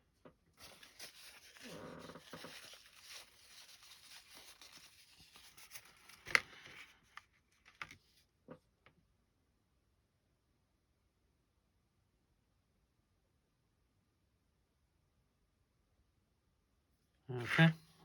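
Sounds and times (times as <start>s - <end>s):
squeaky scrape: 0.6s - 6.0s
faint rustling and scraping: 0.6s - 8.2s.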